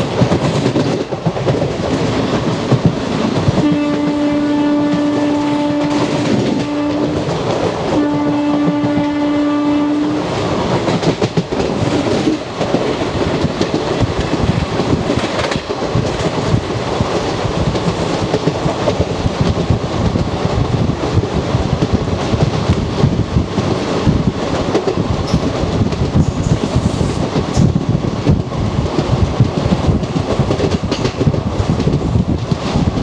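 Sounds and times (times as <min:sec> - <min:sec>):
train wheels rumbling and clattering: 0:00.0 - 0:33.0
locomotive horn: 0:03.6 - 0:07.2, 0:07.9 - 0:10.3.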